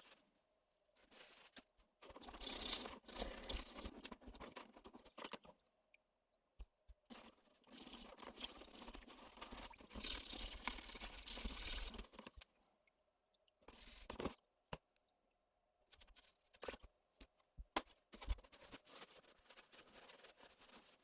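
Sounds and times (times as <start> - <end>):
crunching rustling noise: 1.0 - 3.5.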